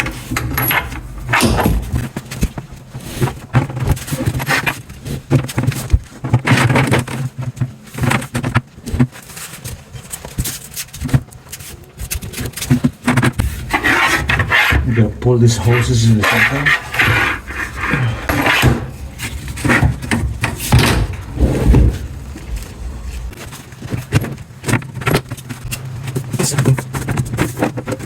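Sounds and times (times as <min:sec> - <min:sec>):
dishwasher knocking and scraping: 0:00.0 - 0:02.5, 0:13.2 - 0:23.4.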